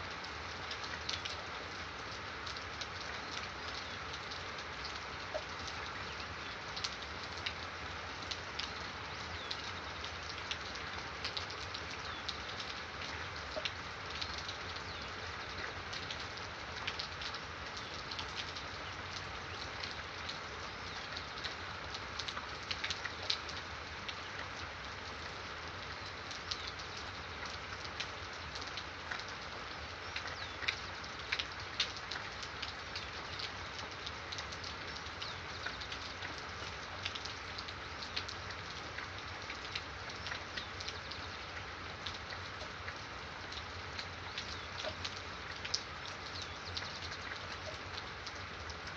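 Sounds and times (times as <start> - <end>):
steady rainfall: 0.0 - 48.9.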